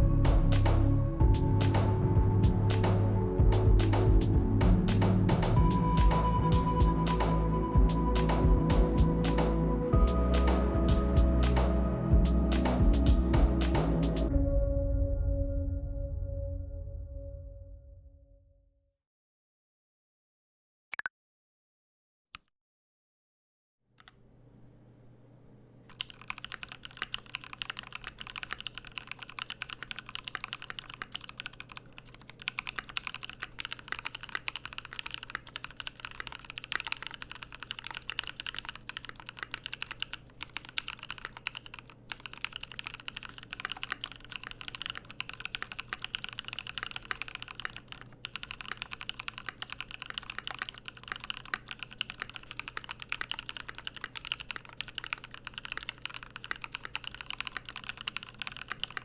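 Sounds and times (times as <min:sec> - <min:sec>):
typing on mechanical keyboard: 0:25.9 - 0:59.0.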